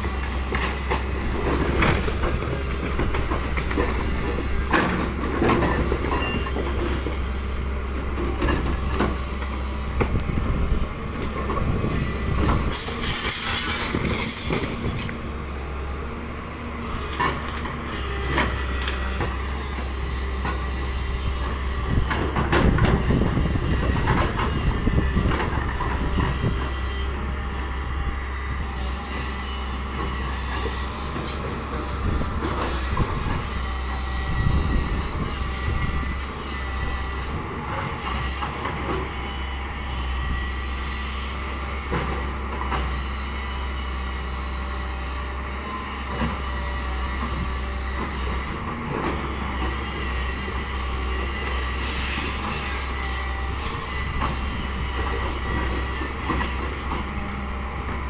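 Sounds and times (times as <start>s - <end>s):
machinery engine drone: 0.0s - 58.0s
hiss: 40.7s - 42.2s.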